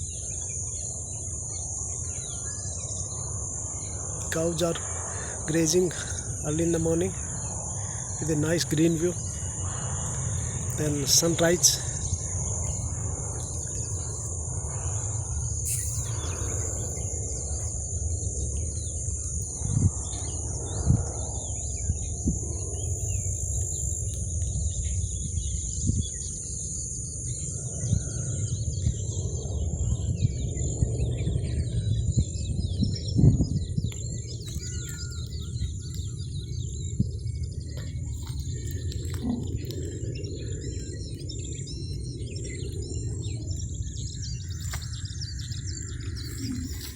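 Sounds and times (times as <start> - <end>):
high insect drone: 0.0 - 46.9
small birds chirping: 0.0 - 46.9
low rumble: 2.8 - 26.2.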